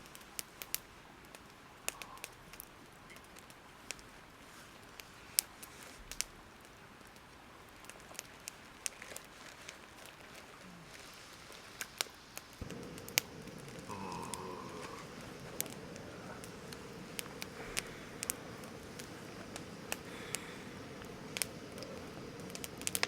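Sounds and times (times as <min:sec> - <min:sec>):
campfire crackling and popping: 0:00.0 - 0:10.6, 0:11.4 - 0:23.0
low rushing noise: 0:12.6 - 0:23.0.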